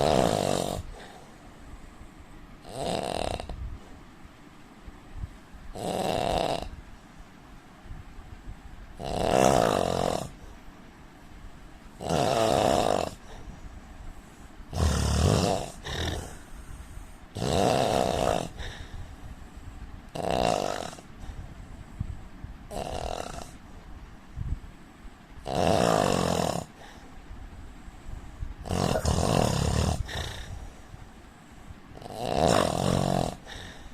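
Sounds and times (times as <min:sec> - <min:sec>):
man snoring: 0:00.0 - 0:01.2, 0:02.6 - 0:03.6, 0:05.7 - 0:06.7, 0:09.0 - 0:10.4, 0:12.0 - 0:13.4, 0:14.7 - 0:16.4, 0:17.3 - 0:18.9, 0:20.1 - 0:21.1, 0:22.7 - 0:23.6, 0:25.4 - 0:27.0, 0:28.6 - 0:30.6, 0:32.0 - 0:33.9.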